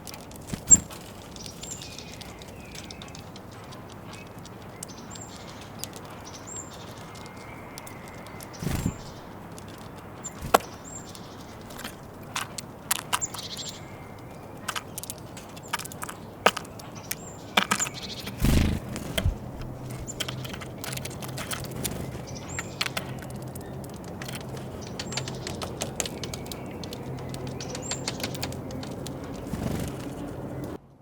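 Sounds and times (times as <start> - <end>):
birds pecking at seeds: 0.0 - 30.8.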